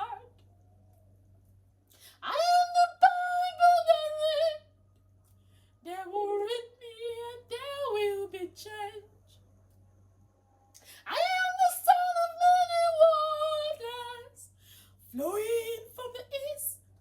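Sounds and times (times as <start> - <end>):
woman singing wordless vocal runs: 0.0 - 0.4, 2.1 - 4.7, 5.8 - 9.1, 11.0 - 16.8.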